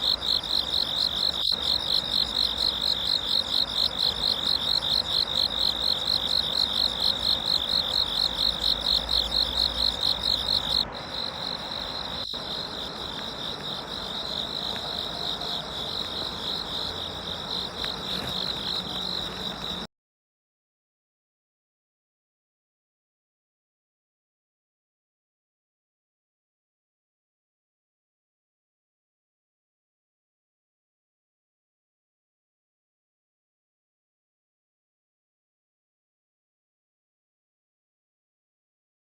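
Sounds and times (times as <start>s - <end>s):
insects trilling: 0.0s - 19.9s.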